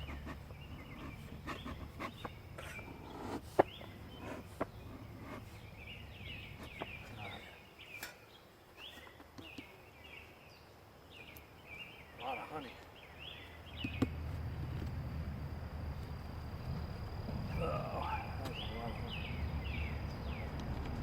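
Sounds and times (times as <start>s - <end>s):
small birds chirping: 0.0s - 21.0s
low rumble: 13.8s - 21.0s.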